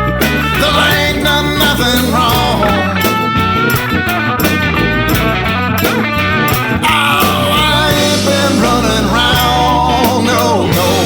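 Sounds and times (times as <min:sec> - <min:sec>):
band backing: 0:00.0 - 0:11.0
blues-rock guitar: 0:00.0 - 0:11.0
person singing: 0:00.3 - 0:03.4, 0:06.7 - 0:11.0.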